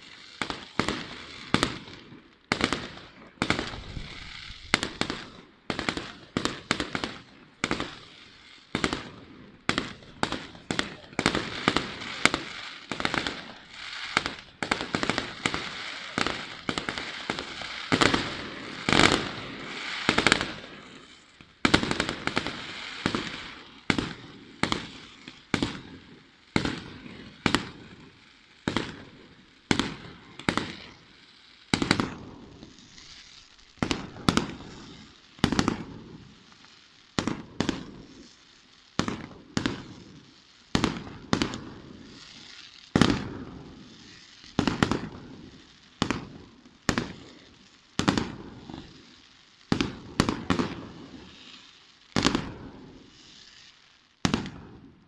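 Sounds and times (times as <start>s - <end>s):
firework shell bursts and crackling: 0.0s - 55.0s
loud firework bangs: 0.4s - 25.9s, 31.7s - 36.2s, 43.0s - 45.4s, 48.0s - 48.8s, 54.2s - 54.9s.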